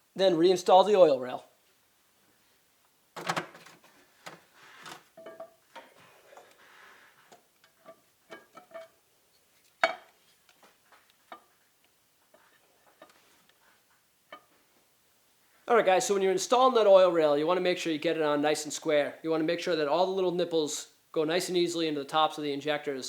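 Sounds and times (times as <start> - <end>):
metal tools clinking and knocking: 5.2 - 6.0, 7.6 - 9.0.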